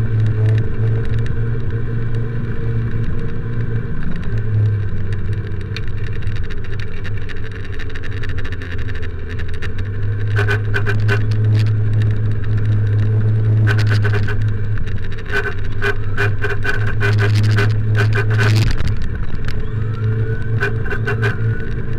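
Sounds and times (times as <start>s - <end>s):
motorcycle engine hum: 0.0s - 21.9s
horn honking in bursts: 10.3s - 11.4s, 13.6s - 14.4s, 15.3s - 18.8s, 19.6s - 21.7s.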